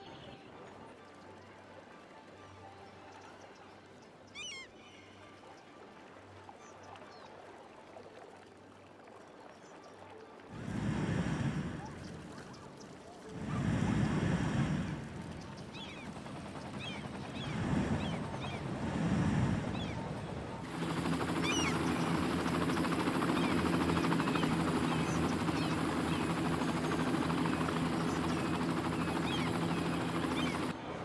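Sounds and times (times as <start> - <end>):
steady engine hum: 10.6 - 31.0
small birds chirping: 20.7 - 30.7.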